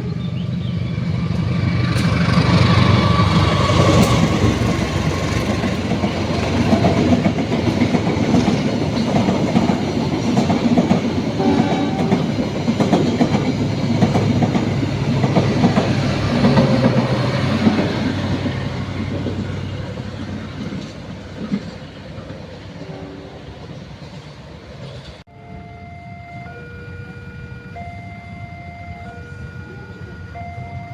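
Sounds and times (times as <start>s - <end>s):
low train engine drone: 0.0s - 30.9s
train wheels clattering: 1.2s - 22.8s.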